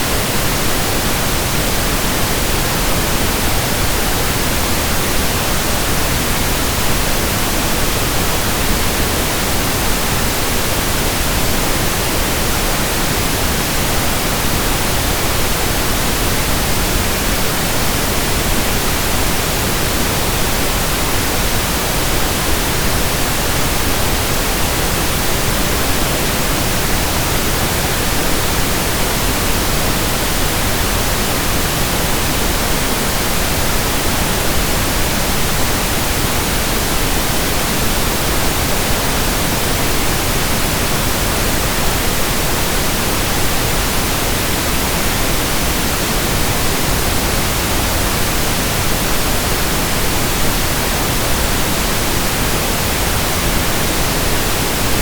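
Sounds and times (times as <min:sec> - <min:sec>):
steady pink noise hiss: 0:00.0 - 0:55.0.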